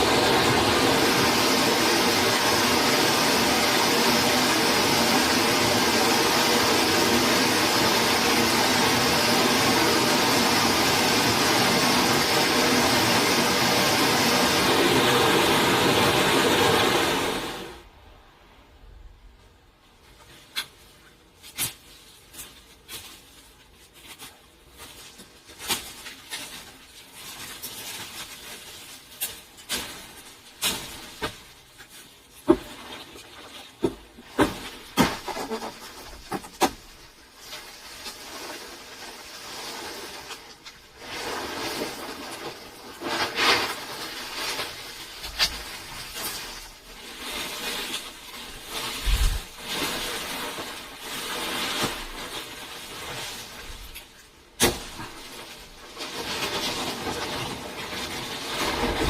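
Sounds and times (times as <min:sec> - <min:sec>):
scraping and rustling: 0:19.8 - 0:59.0.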